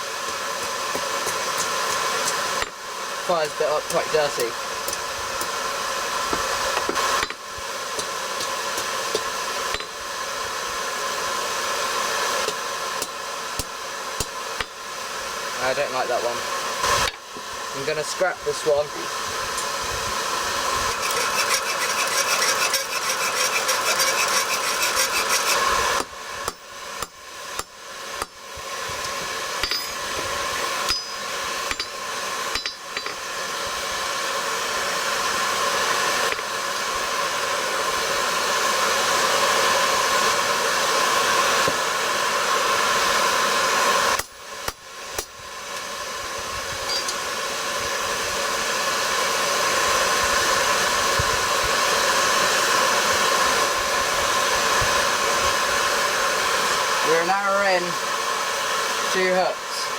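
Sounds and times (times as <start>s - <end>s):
forge blower hissing: 0.0s - 59.9s
hammer striking steel on anvil: 20.9s - 28.4s, 29.6s - 30.1s, 30.8s - 33.2s, 46.9s - 47.2s.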